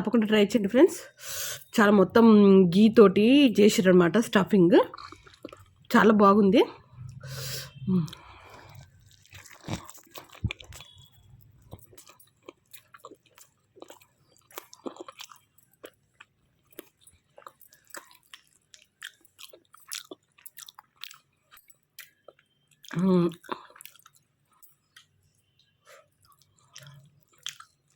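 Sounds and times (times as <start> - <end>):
close-up wet chewing: 4.9 - 5.9, 8.1 - 27.9.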